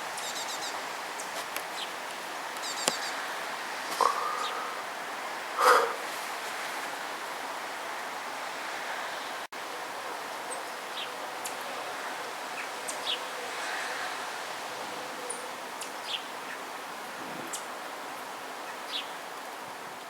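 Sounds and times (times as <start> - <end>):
heavy rain falling: 0.0 - 20.0
faint high chirps and ticks: 2.6 - 3.2.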